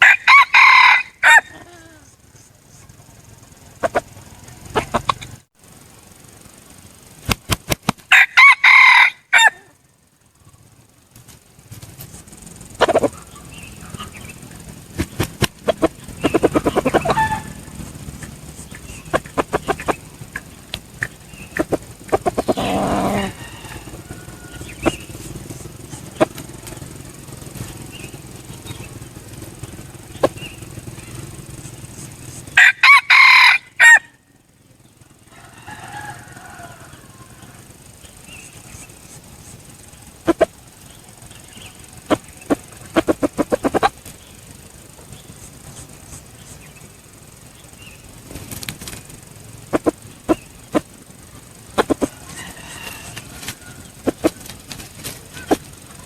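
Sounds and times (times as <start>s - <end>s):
rooster crowing: 0.0s - 2.2s, 8.1s - 9.8s, 15.7s - 20.0s, 21.3s - 27.0s, 31.8s - 34.4s, 35.2s - 38.9s, 51.8s - 54.5s
bird calls: 0.0s - 5.5s, 6.2s - 56.0s
rustling: 37.7s - 56.0s.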